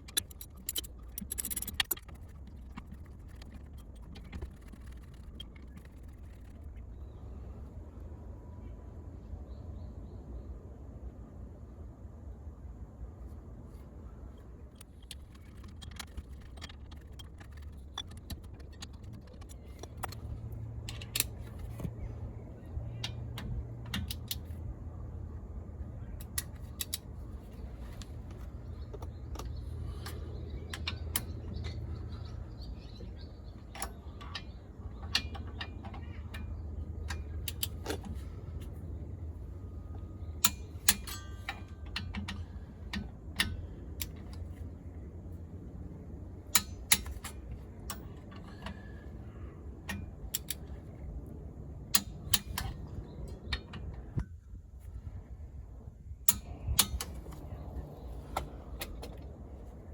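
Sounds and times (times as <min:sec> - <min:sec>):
rapid clicks: 0:00.0 - 0:07.4, 0:14.4 - 0:22.0
steady low hum: 0:00.0 - 0:59.9.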